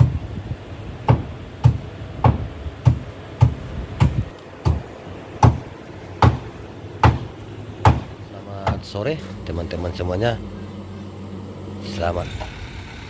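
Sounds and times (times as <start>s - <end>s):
hammer striking wooden boards: 1.1s - 4.8s, 5.4s - 8.9s.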